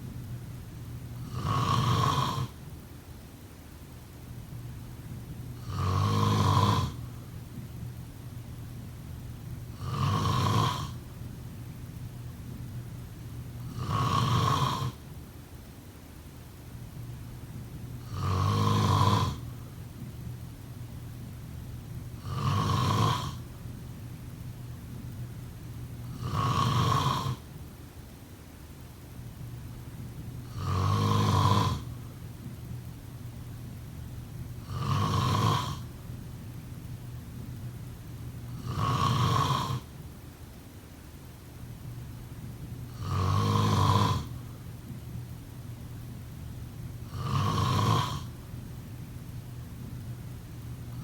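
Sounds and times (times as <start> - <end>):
person snoring: 1.2 - 2.6, 5.6 - 7.0, 9.8 - 11.0, 13.6 - 15.0, 18.0 - 19.5, 22.2 - 23.4, 26.1 - 27.4, 30.5 - 31.9, 34.6 - 35.9, 38.5 - 39.9, 42.9 - 44.4, 47.0 - 48.3.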